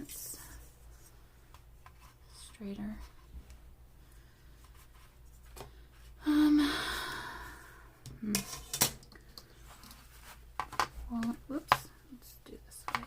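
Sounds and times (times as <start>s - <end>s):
woman sighing: 6.2s - 8.3s.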